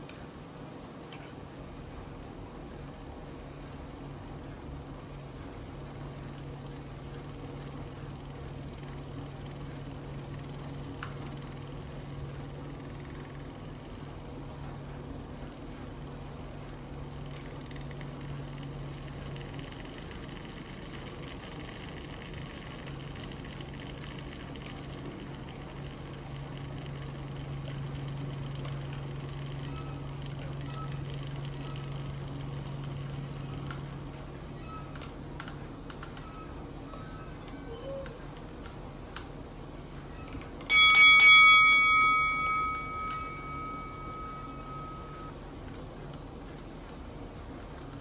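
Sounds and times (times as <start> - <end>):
metallic bell chime ringing: 40.7 - 45.3.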